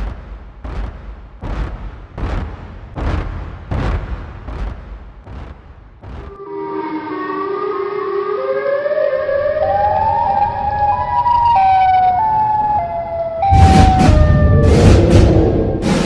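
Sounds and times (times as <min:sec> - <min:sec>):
siren wail stepping in pitch: 0:06.4 - 0:15.9
loud noisy rumble: 0:13.5 - 0:16.0.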